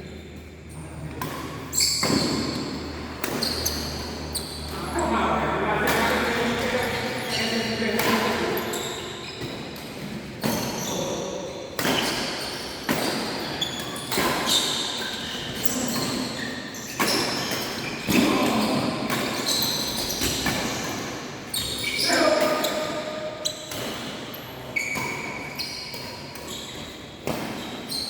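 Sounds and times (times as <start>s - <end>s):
shoe squeaks: 1.7s - 5.0s, 6.0s - 9.8s, 10.4s - 28.0s
rackets hitting shuttlecock: 5.8s - 7.2s.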